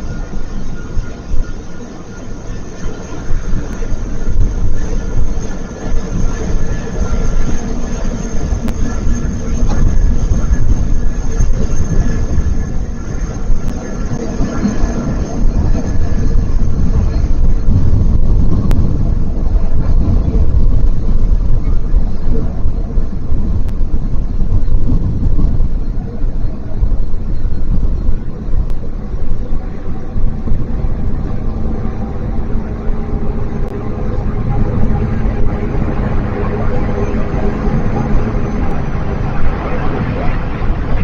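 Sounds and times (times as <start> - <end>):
jet engines rumbling: 0.0 - 41.0.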